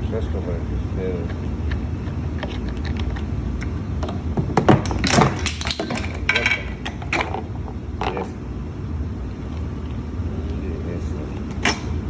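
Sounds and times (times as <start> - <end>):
steady low hum: 0.0 - 12.0
tools clicking and knocking: 1.6 - 8.3.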